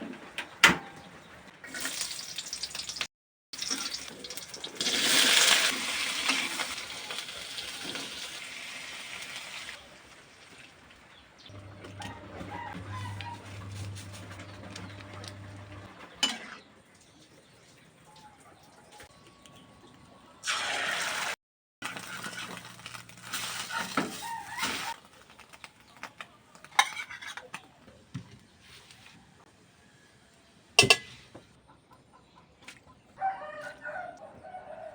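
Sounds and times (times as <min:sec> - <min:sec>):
kitchen utensils and dishes clinking: 0:11.5 - 0:16.7, 0:26.6 - 0:27.8, 0:30.8 - 0:31.2.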